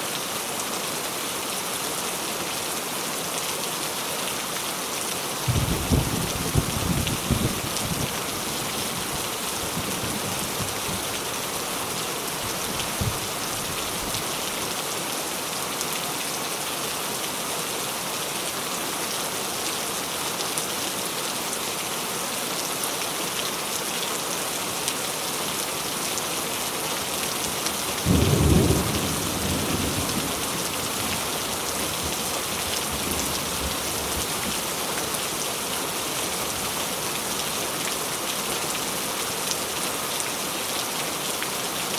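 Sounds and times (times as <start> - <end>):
heavy rain falling: 0.1 - 41.9
thunder rumbling: 5.5 - 11.2, 28.0 - 31.7.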